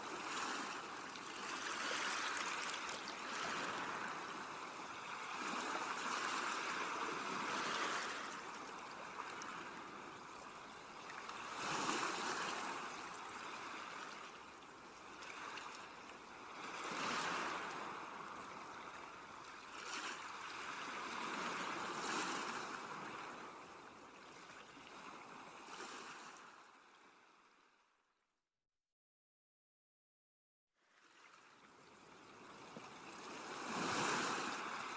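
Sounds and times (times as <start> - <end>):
sea waves washing onto shore: 0.0 - 14.5, 15.1 - 23.8, 32.5 - 34.9.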